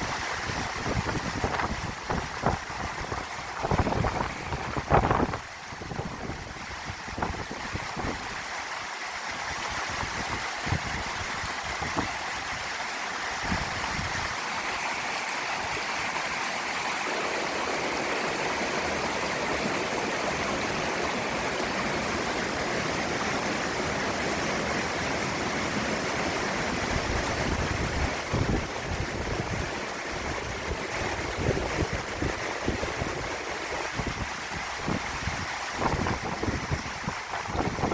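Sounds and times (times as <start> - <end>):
wind buffeting microphone: 0.0 - 8.4, 9.7 - 12.7, 13.4 - 14.4, 26.8 - 37.9
stream rushing over rocks: 0.0 - 37.9.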